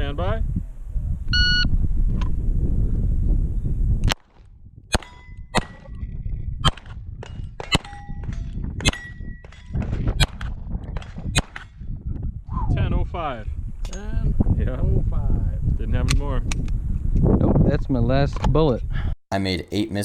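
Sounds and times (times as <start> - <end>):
pistol shots: 4.1 - 5.9, 10.2 - 11.7
steel target ringing: 4.9 - 5.8, 7.6 - 9.8.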